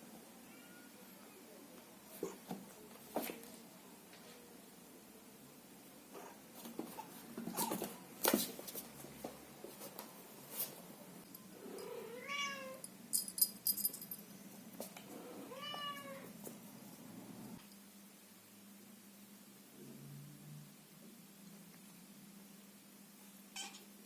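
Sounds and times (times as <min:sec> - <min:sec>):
kitten meowing: 0:23.6 - 0:23.9.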